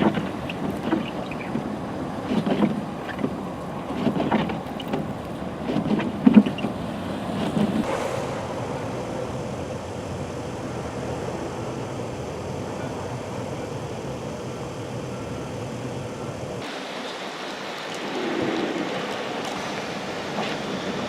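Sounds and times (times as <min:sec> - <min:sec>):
wind on microphone: 0:00.0 - 0:16.7
road vehicle noise: 0:00.0 - 0:21.0.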